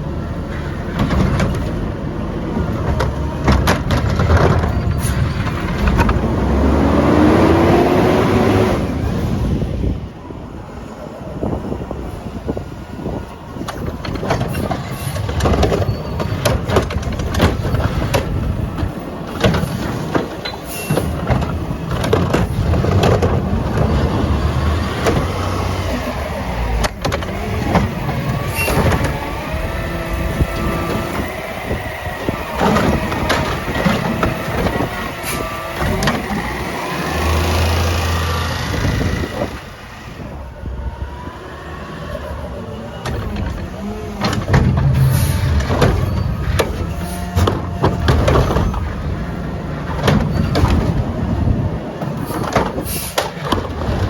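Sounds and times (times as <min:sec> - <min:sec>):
garbage truck engine rumbling: 0:00.0 - 0:54.0
metal knocks and clatters: 0:13.7 - 0:24.2, 0:43.0 - 0:49.0, 0:49.8 - 0:51.2.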